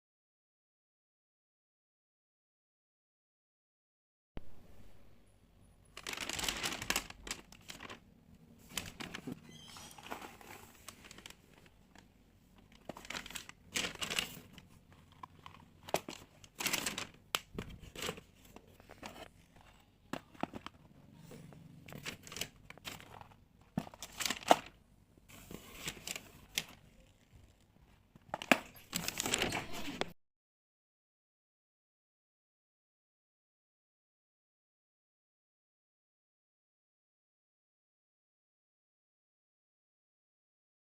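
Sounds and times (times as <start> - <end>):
packaging crinkling and tearing: 6.0 - 8.0, 8.6 - 19.6, 22.0 - 24.8, 25.7 - 27.6, 28.4 - 30.1.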